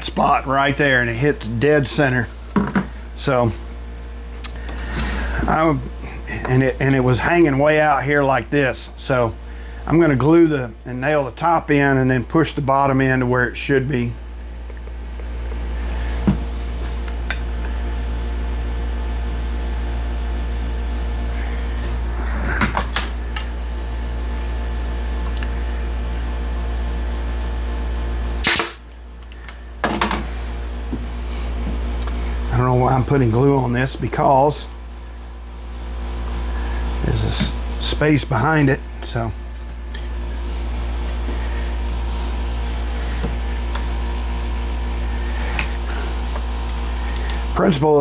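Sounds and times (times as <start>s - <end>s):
nail gun firing: 28.4s - 28.8s.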